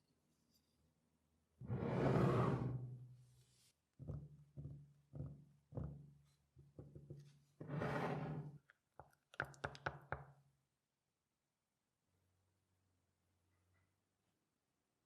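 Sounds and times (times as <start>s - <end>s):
sharp clicks and taps: 9.0s - 10.3s.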